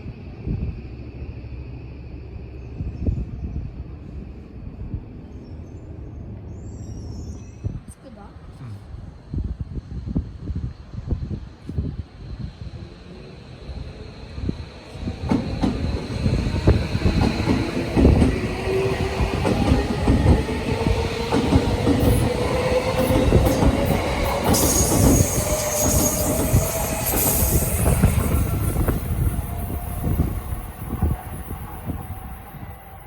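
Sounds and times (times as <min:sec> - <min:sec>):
heavy train rumble: 0:00.0 - 0:33.0
train wheels clacking on rails: 0:14.9 - 0:29.5.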